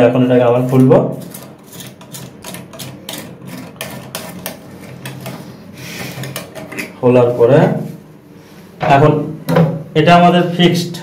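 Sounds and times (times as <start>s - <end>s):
toilet flush mechanism scraping and clicking: 0.6s - 5.4s, 6.0s - 7.0s.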